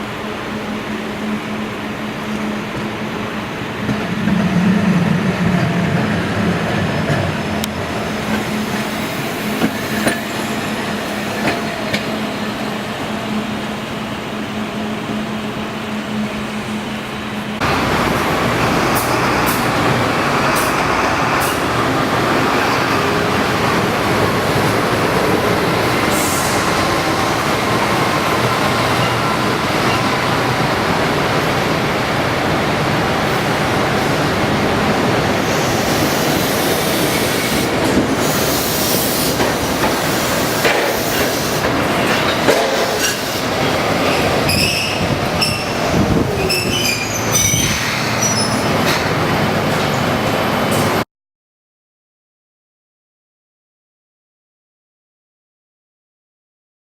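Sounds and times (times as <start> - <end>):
tram wheels rumbling on rail: 0.0 - 51.0
wheels squealing: 41.0 - 48.9.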